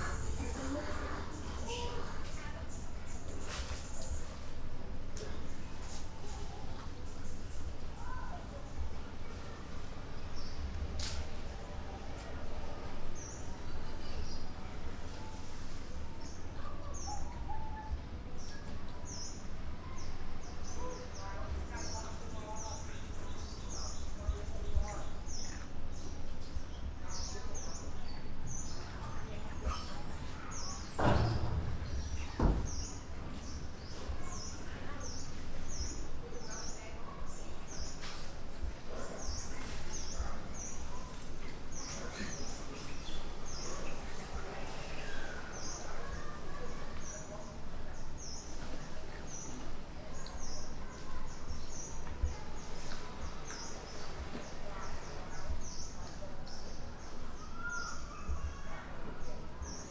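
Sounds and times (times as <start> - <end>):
rustle: 0.0 - 8.7, 9.3 - 13.4
outdoor background noise: 0.0 - 59.9
thump: 31.0 - 31.8, 32.4 - 32.8.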